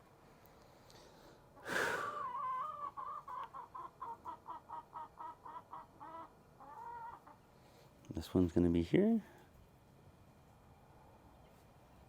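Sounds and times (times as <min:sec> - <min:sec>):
chicken clucking: 0:02.2 - 0:07.4.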